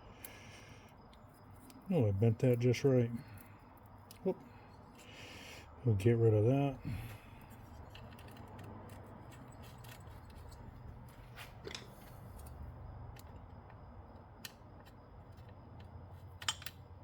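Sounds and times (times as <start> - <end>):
small metal parts clicking: 7.3 - 17.0.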